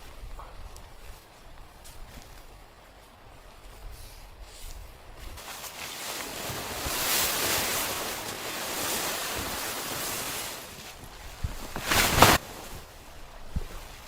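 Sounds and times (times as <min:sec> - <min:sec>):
loud rustle: 0:04.1 - 0:14.0.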